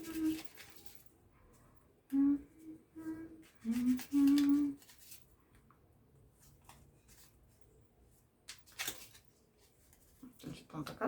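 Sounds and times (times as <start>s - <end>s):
card rustle: 0.0s - 1.1s, 3.4s - 5.4s, 6.3s - 7.8s, 8.4s - 11.0s
woman humming: 2.1s - 4.8s
cards clicking while handled: 8.5s - 9.2s.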